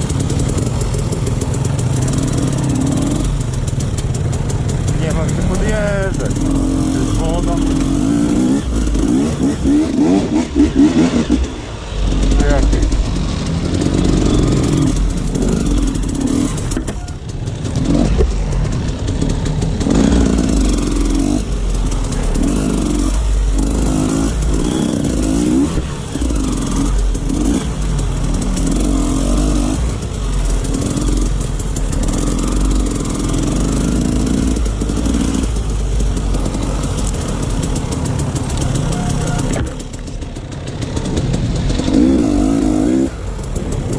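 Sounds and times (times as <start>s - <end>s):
dirt bike engine revving: 0.0s - 43.9s.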